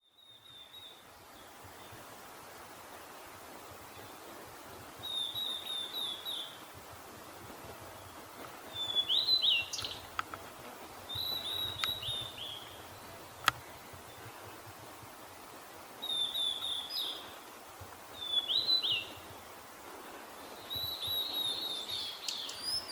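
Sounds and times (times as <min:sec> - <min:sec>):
bird whistled calls: 0:05.0 - 0:06.5, 0:08.8 - 0:10.0, 0:11.1 - 0:12.6, 0:16.0 - 0:17.2, 0:18.2 - 0:19.1, 0:20.7 - 0:22.9
bird sharp ticks: 0:09.7 - 0:10.4, 0:11.7 - 0:12.2.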